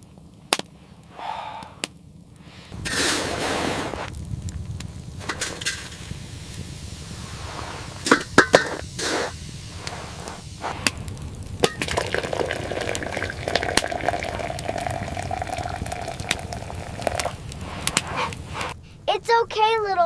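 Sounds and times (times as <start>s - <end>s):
water pouring into basin: 11.6s - 17.6s.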